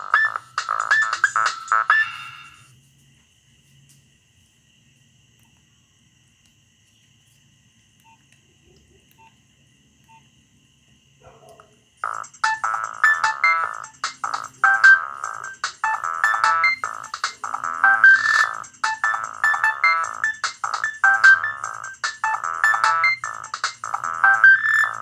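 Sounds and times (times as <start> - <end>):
electronic phone ringtone melody: 0.0 - 2.7, 12.0 - 25.0.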